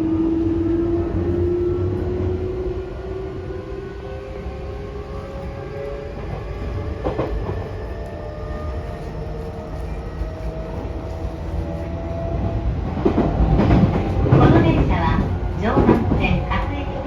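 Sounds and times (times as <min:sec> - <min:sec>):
wheels rumbling on rail: 0:00.0 - 0:17.0
rail joint clack: 0:13.0 - 0:17.0.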